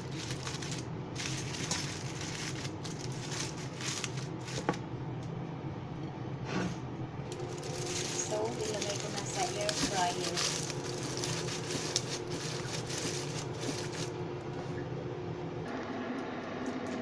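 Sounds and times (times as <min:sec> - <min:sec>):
aluminium foil crinkling: 0:00.0 - 0:04.8, 0:07.3 - 0:14.2
steady low hum: 0:00.0 - 0:17.0.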